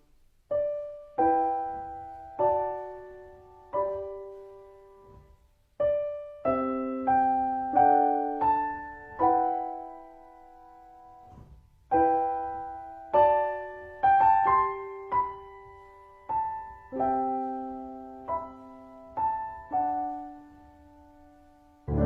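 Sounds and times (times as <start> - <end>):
gentle solo piano chords: 0.0 - 22.0.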